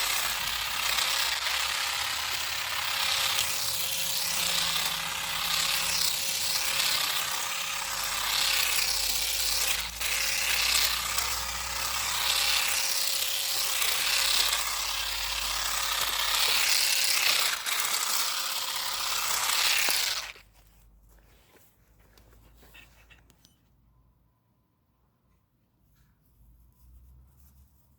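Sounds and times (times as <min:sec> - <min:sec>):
electric shears buzzing: 0:00.0 - 0:20.4.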